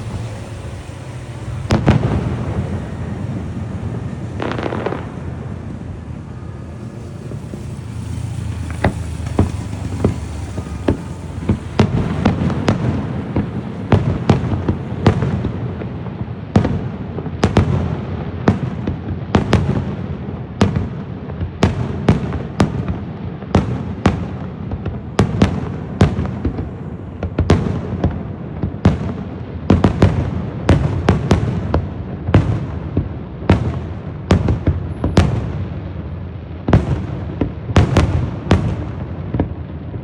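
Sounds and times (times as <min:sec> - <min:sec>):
low rumble of firework shells: 0:00.0 - 0:15.8
sharp firework bangs: 0:00.0 - 0:40.0.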